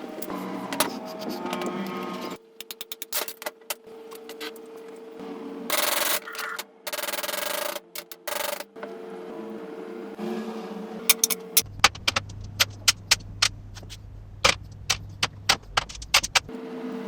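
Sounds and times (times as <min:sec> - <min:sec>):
clicks and taps on metal: 0:11.1 - 0:16.5.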